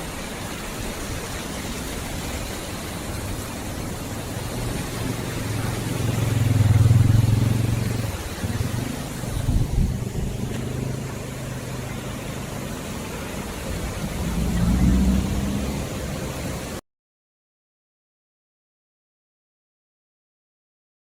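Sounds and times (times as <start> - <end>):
wind and road noise: 0.0 - 16.8
motorcycle engine running: 4.3 - 12.5.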